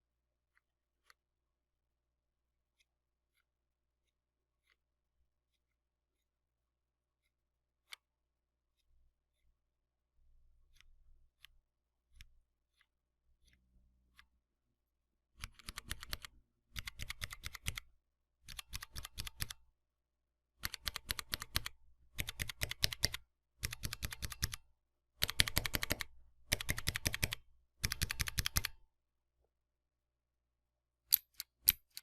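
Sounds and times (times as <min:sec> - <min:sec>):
mechanical keyboard clicking: 0:15.4 - 0:17.9, 0:18.5 - 0:19.6, 0:20.6 - 0:24.6, 0:25.2 - 0:28.8.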